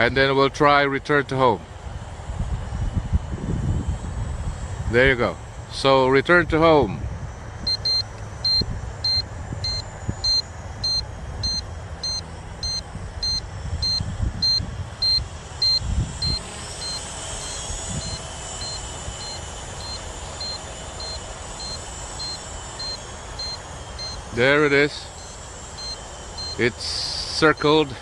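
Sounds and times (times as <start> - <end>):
faint high propeller whine: 0.0 - 28.0
wind rumbling on microphone: 1.8 - 5.5, 6.2 - 20.6
remote controller beeping: 7.7 - 24.5, 25.1 - 26.8.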